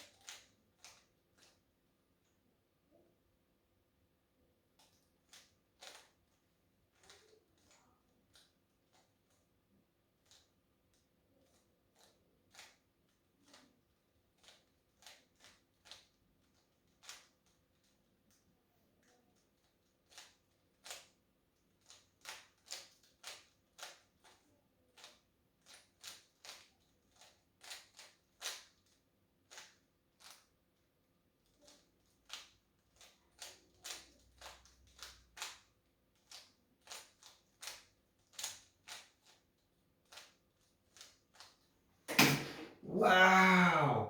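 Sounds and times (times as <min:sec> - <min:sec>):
knock: 0:42.1 - 0:42.8.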